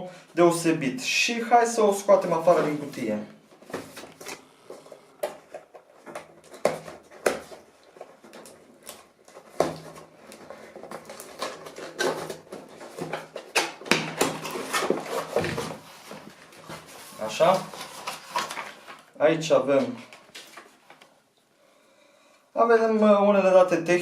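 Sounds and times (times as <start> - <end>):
cardboard packaging handled: 2.3 - 19.2.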